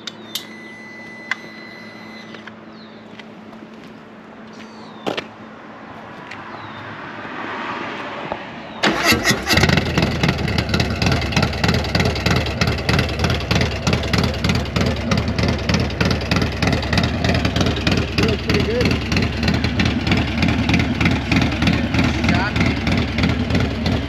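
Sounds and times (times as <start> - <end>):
motorcycle engine starting and running: 8.8 - 24.0.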